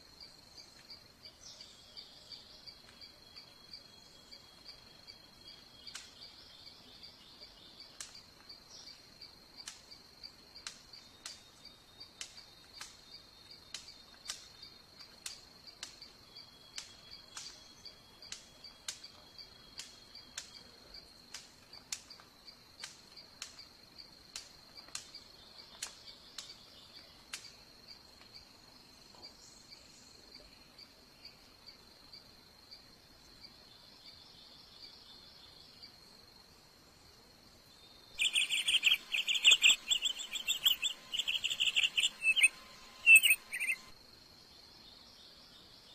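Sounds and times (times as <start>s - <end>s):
high pulsed insect trill: 37.8s - 44.2s
sharp clicks: 38.2s - 43.9s.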